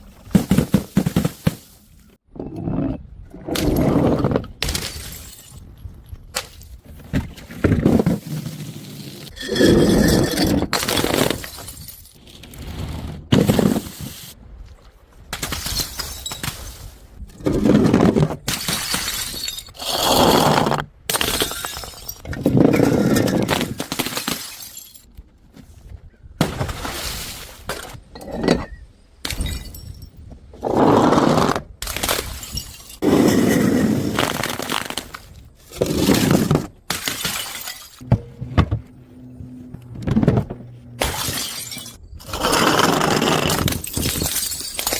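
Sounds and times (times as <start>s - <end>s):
glass bottles smashing: 4.6s - 5.7s, 9.4s - 12.2s, 15.5s - 16.6s, 18.5s - 19.9s, 21.1s - 22.2s, 22.8s - 25.1s, 29.3s - 30.2s, 31.9s - 34.2s, 36.9s - 38.0s, 41.0s - 42.0s, 43.4s - 44.9s.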